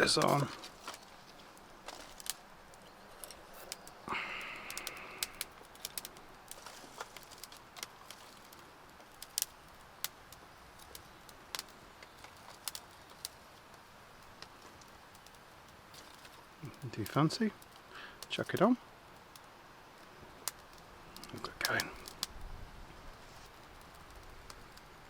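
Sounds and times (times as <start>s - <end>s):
scraping rustle: 0.0s - 3.9s, 5.8s - 8.6s, 23.1s - 24.2s
campfire crackling and popping: 0.0s - 25.0s.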